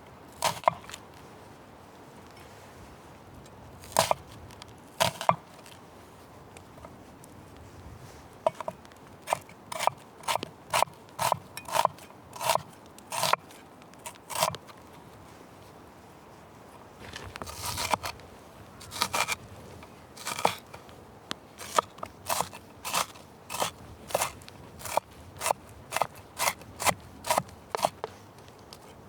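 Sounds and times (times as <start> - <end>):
scraping crunching strokes: 16.8 - 28.8.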